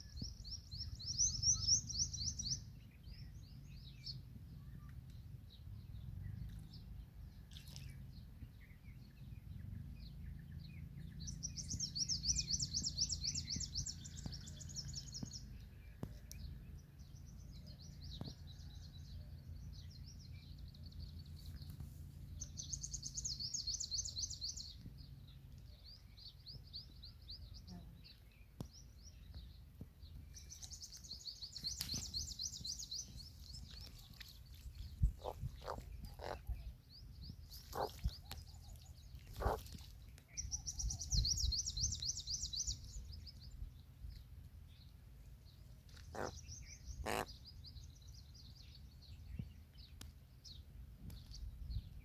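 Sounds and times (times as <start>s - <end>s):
birds chirping trills: 9.6s - 52.0s
sharp single bird calls: 47.0s - 47.3s.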